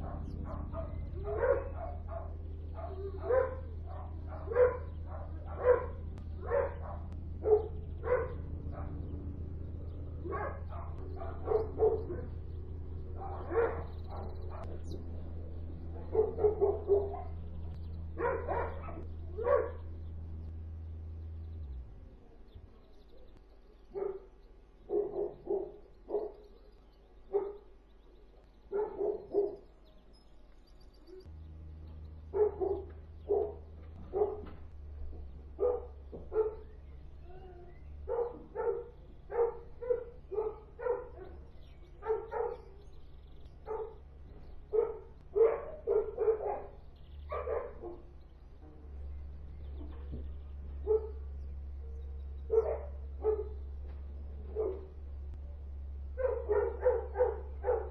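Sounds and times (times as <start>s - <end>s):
low rumble: 0.0s - 24.9s
dogs barking: 0.0s - 30.2s, 31.0s - 57.9s.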